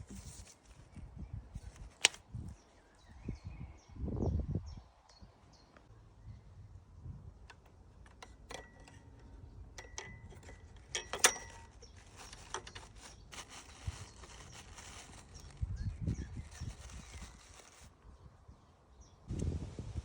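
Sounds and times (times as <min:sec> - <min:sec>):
light clicks and clinks: 0:07.5 - 0:15.6.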